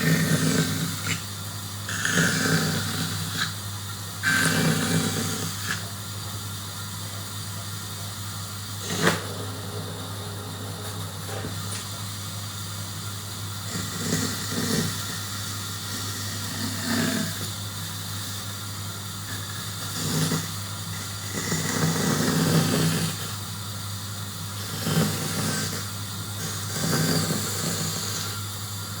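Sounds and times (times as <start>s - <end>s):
power tool cutting wood: 4.2s - 5.9s, 8.8s - 12.1s.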